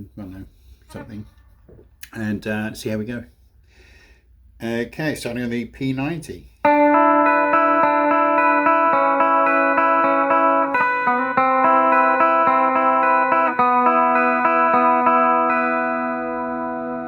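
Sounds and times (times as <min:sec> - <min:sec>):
electric guitar playing: 0:06.6 - 0:17.0.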